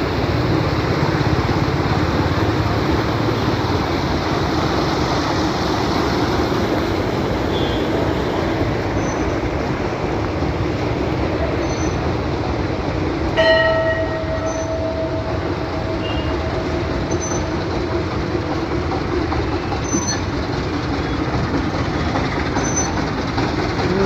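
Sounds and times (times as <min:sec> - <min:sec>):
steady rushing background noise: 0:00.0 - 0:24.0
metal temple bell ringing: 0:13.4 - 0:17.6.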